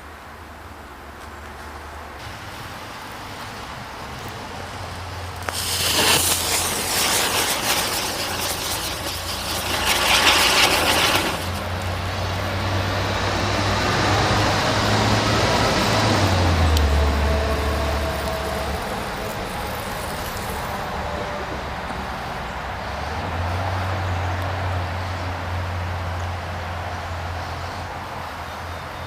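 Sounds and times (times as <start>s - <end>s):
firework hissing and crackling: 2.2s - 14.5s, 15.5s - 21.0s.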